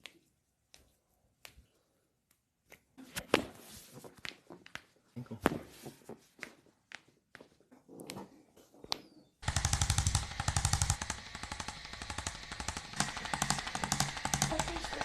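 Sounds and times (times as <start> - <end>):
rapid sharp mechanical taps: 9.4 - 15.0.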